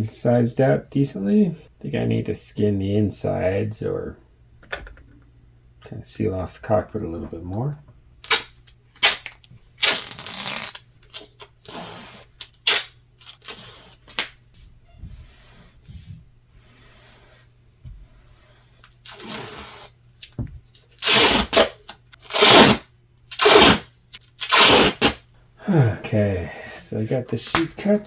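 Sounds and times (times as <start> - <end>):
duct tape ripping: 8.2 - 14.3, 18.8 - 25.2.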